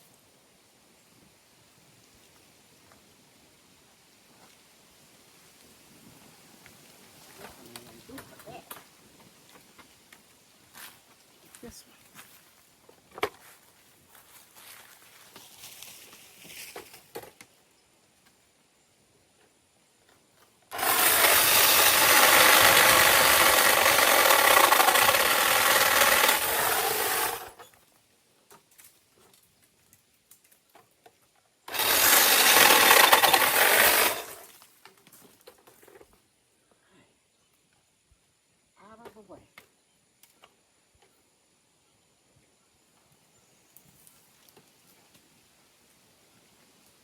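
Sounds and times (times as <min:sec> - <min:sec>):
battery saw whining: 0:20.7 - 0:27.6, 0:31.7 - 0:34.5.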